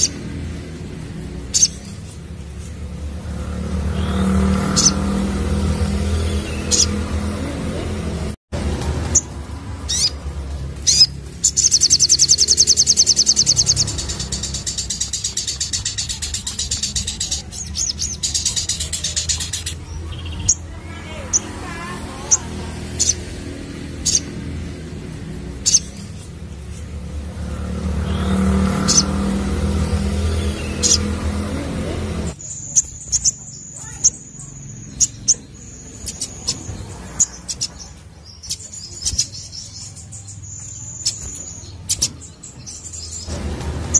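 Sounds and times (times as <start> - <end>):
bird chirps: 1.4 - 8.0, 9.1 - 43.9
sunbird singing trill: 10.8 - 24.9, 32.3 - 43.3
vehicle engine running: 41.1 - 43.9.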